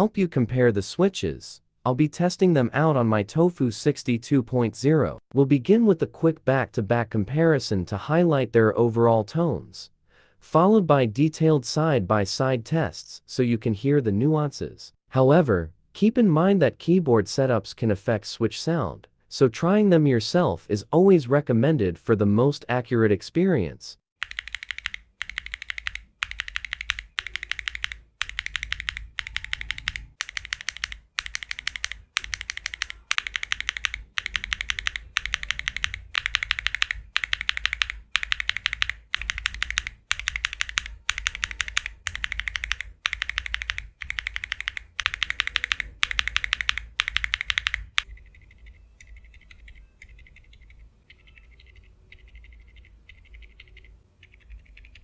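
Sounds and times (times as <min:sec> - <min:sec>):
typing on mechanical keyboard: 0:24.2 - 0:55.0.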